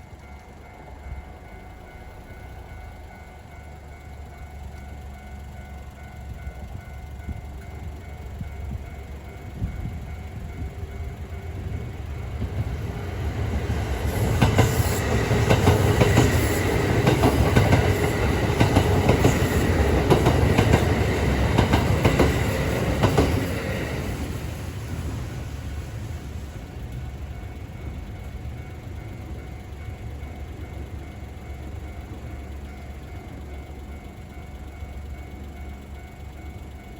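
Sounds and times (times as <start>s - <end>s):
level-crossing warning bell: 0.0s - 36.9s
train wheels clattering over rail joints: 8.4s - 30.9s.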